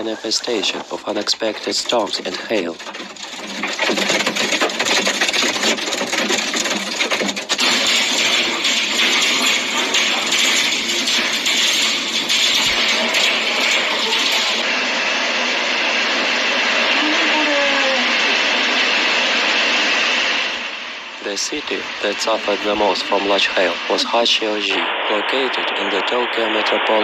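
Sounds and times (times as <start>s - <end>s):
pouring hail and rain hiss: 0.7s - 25.6s
hail clattering on hard surfaces: 1.1s - 14.7s.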